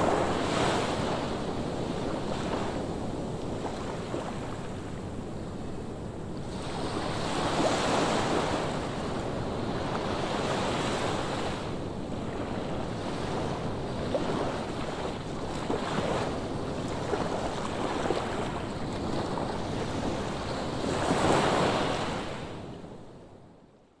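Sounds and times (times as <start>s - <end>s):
wind on microphone: 0.0s - 23.2s
ocean waves breaking: 6.4s - 22.5s.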